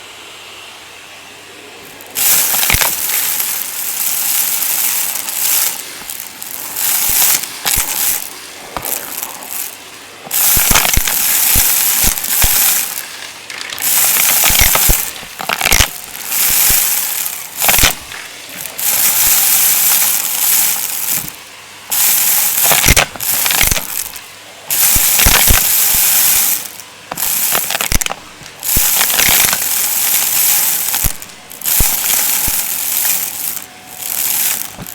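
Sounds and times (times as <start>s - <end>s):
vacuum cleaner hissing: 0.0s - 34.9s
debris crackling in vacuum: 1.8s - 34.9s.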